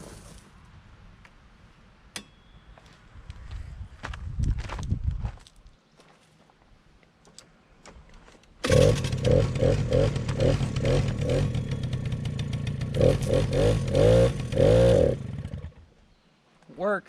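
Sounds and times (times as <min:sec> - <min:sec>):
small two-stroke engine revving: 0:08.6 - 0:15.8.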